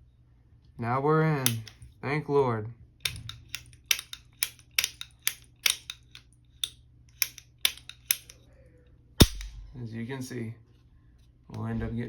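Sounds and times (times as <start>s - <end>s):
small metal tools clicking and tapping: 3.0s - 8.4s.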